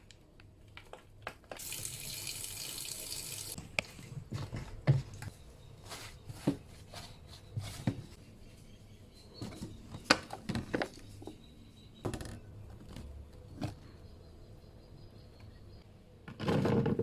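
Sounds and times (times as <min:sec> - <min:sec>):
water tap running: 0:01.6 - 0:03.6.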